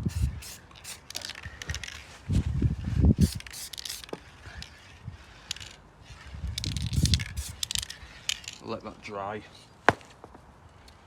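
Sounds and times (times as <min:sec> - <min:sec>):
aerosol spray can hissing: 0:00.0 - 0:01.8, 0:03.2 - 0:04.2, 0:06.6 - 0:07.9.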